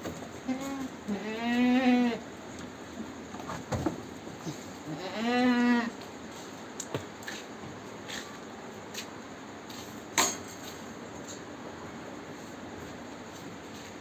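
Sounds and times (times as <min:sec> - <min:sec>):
goat bleating: 0:00.4 - 0:02.2, 0:04.4 - 0:06.0.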